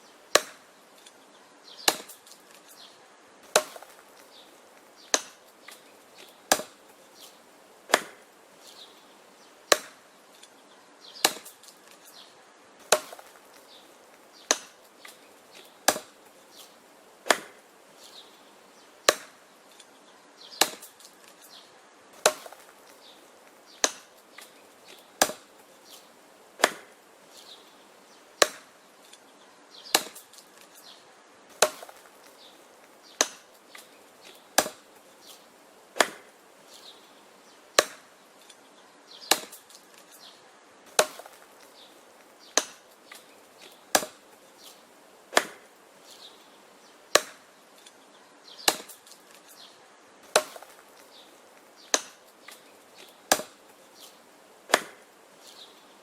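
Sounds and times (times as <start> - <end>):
axe chopping wood: 0.3 - 0.7, 1.8 - 2.6, 3.4 - 6.9, 7.9 - 8.3, 9.7 - 10.0, 11.2 - 12.2, 12.8 - 17.6, 19.0 - 19.8, 20.5 - 21.5, 22.2 - 27.0, 28.4 - 29.2, 29.9 - 35.4, 36.0 - 36.3, 37.8 - 38.2, 39.2 - 40.1, 40.9 - 41.8, 42.4 - 44.3, 45.3 - 45.7, 47.1 - 47.5, 48.6 - 49.5, 50.2 - 51.2, 51.8 - 55.1.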